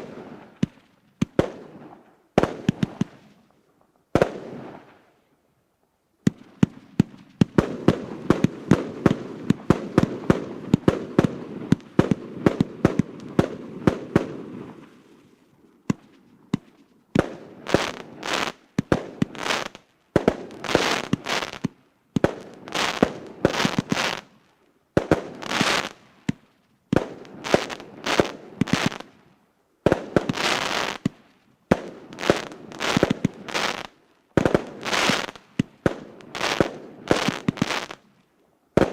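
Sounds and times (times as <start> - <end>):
firework shots and bursts: 4.2 - 4.8, 6.3 - 15.0, 15.9 - 24.4, 25.0 - 29.1, 29.8 - 38.1
firework crackling volleys: 6.3 - 29.2, 29.9 - 38.1.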